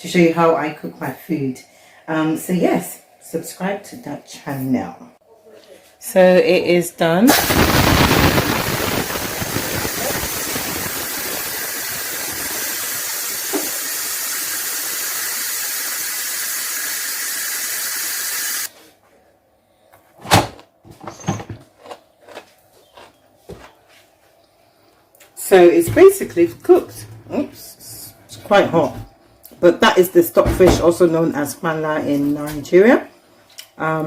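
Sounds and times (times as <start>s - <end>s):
pressure cooker steam hissing: 7.3s - 18.7s.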